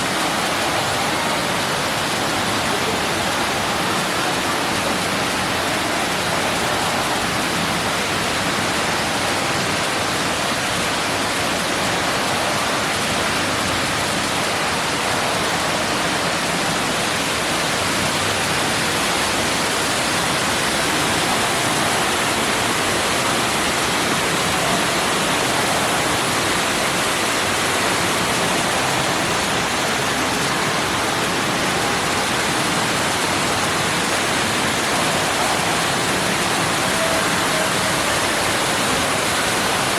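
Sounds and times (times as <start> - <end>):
water rushing into a pool: 0.0 - 39.9.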